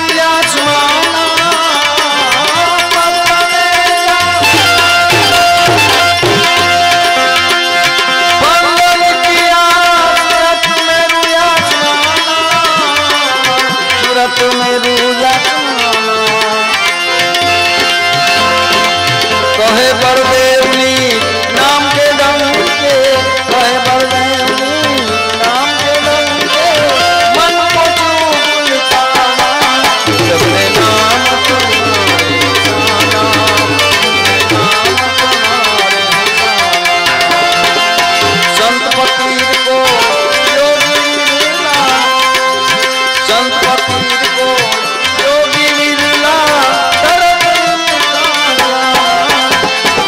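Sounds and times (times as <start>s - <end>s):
devotional melody with gliding notes: 0.0s - 50.0s
tabla rhythm: 0.0s - 50.0s.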